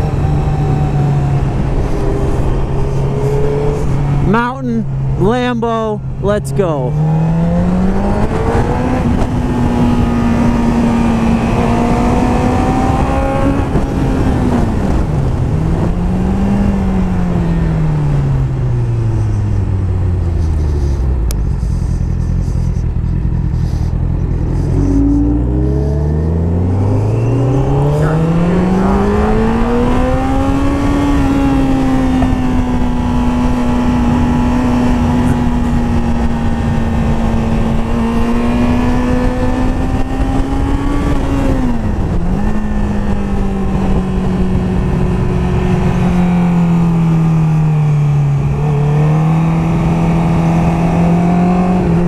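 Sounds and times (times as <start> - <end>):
motorcycle engine revving: 0.0 - 5.2, 6.9 - 52.0
wind rush: 7.0 - 22.2, 22.9 - 47.6.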